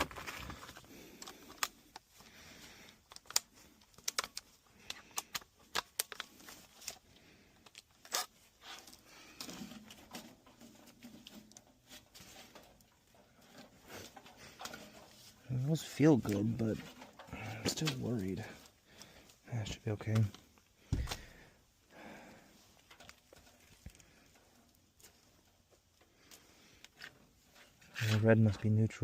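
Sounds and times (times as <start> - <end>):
plastic and wire handling clicks: 0.0 - 7.0, 7.6 - 11.7, 22.8 - 28.7.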